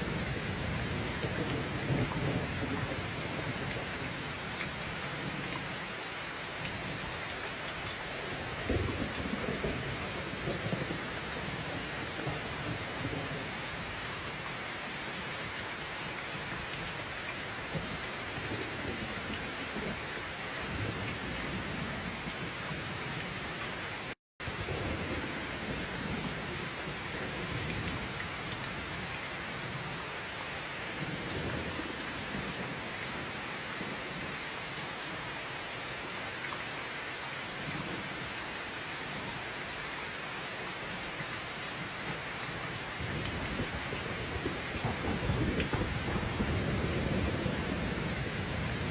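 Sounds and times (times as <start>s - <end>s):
heavy rain: 0.0s - 48.9s
rolling thunder: 43.1s - 48.9s.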